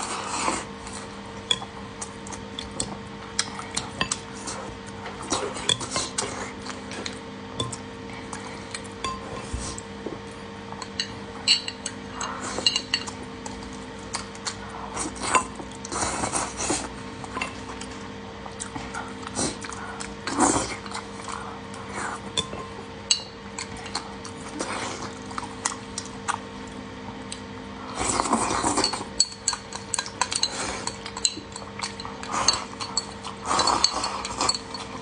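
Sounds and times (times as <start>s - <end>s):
faint steady hum: 0.0s - 35.0s
utensils clinking against bowl: 5.2s - 7.8s, 9.0s - 9.6s, 10.8s - 18.0s, 22.2s - 24.8s, 28.0s - 35.0s.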